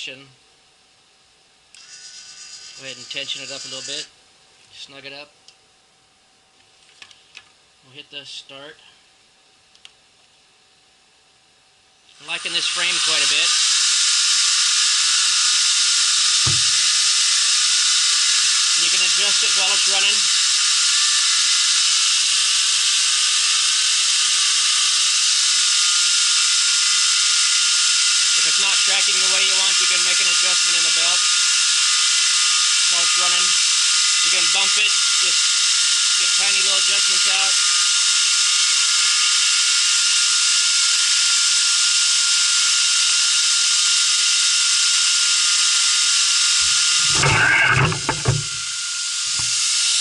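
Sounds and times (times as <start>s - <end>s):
belt grinder hissing: 1.7s - 4.1s, 12.2s - 50.0s.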